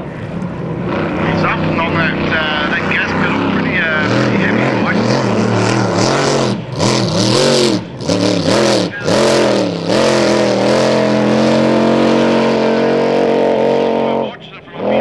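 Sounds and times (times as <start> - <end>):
racing boat engine at high revs: 0.0 - 15.0.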